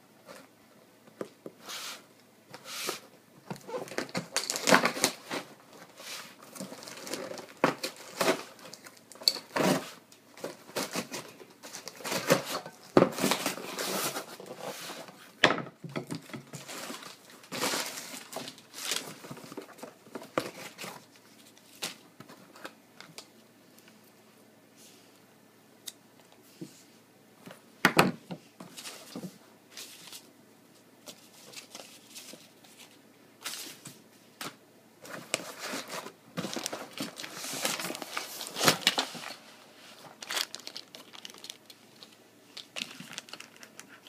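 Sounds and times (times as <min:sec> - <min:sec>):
packaging crinkling and tearing: 0:03.5 - 0:05.8, 0:06.4 - 0:14.6, 0:16.6 - 0:23.3, 0:35.1 - 0:44.0.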